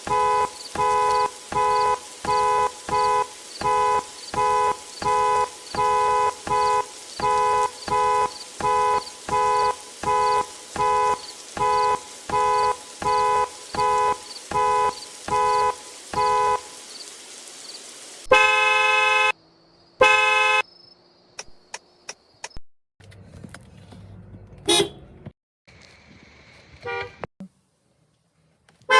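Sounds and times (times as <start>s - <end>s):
car alarm horn beeping: 0.0s - 16.6s, 18.3s - 19.4s, 20.0s - 20.6s, 24.6s - 25.1s, 26.8s - 27.3s
car horn honk: 0.0s - 16.6s, 18.3s - 19.4s, 20.0s - 20.6s, 24.6s - 25.2s, 26.8s - 27.3s.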